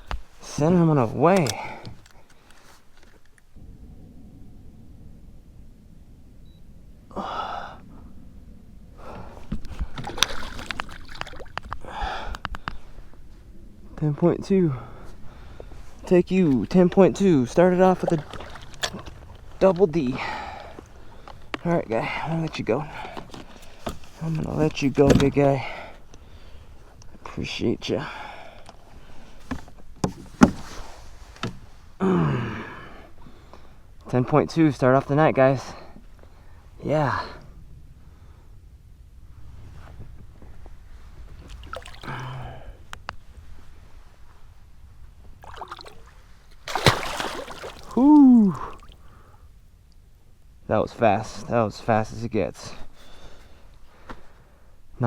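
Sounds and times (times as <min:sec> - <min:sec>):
man sighing: 0:07.1 - 0:07.9, 0:11.8 - 0:12.4, 0:32.0 - 0:33.1, 0:42.0 - 0:42.8, 0:47.7 - 0:49.4
man breathing heavily: 0:07.1 - 0:08.1, 0:11.8 - 0:13.2.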